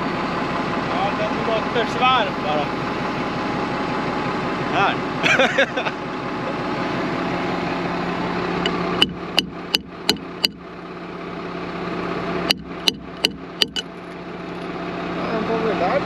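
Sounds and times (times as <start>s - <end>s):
tractor engine idling: 0.0s - 16.0s
hammer striking metal: 8.6s - 10.6s, 12.5s - 13.9s.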